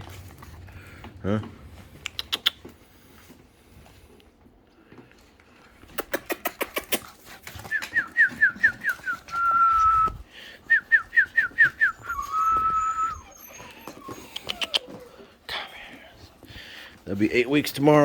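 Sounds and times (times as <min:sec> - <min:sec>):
quick sharp clicks: 0:05.9 - 0:07.0
whistled falling phrase: 0:07.7 - 0:13.3.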